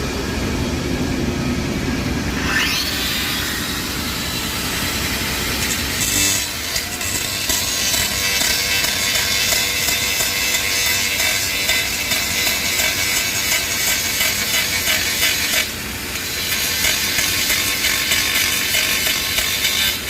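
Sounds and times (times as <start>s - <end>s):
welding arc crackling: 4.8s - 20.0s.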